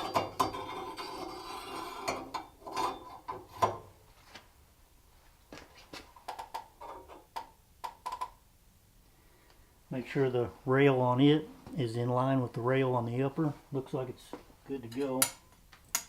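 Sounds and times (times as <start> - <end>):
metal scraping and clinking: 0.0 - 3.8.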